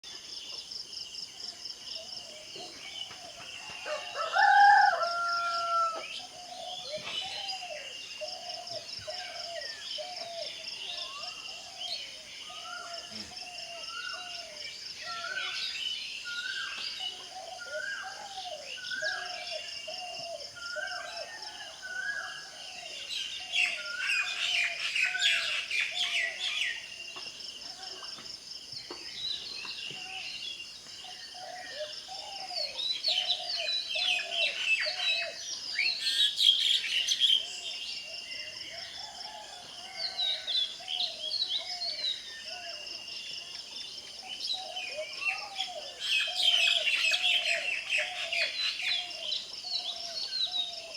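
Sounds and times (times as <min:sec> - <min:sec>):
songbirds chirping: 0:00.0 - 0:50.9
rooster crowing: 0:03.8 - 0:06.1.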